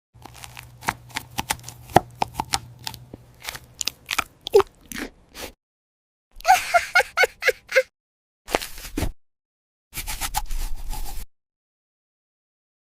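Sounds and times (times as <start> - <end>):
crisp crunching and crackling: 0.2 - 5.1.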